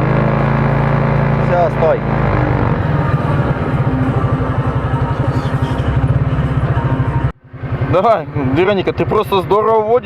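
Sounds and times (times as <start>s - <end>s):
small petrol engine idling: 2.1s - 10.0s.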